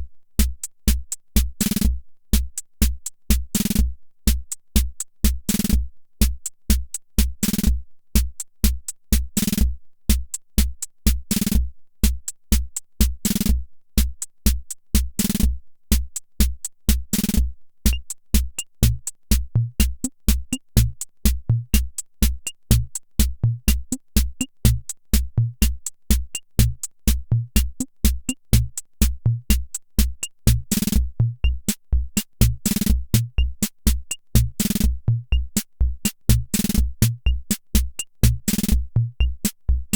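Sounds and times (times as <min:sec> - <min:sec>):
hi-hat and snare hits: 0:00.0 - 0:39.9
bass drum thumps: 0:18.8 - 0:21.9, 0:22.7 - 0:25.8, 0:26.6 - 0:39.9.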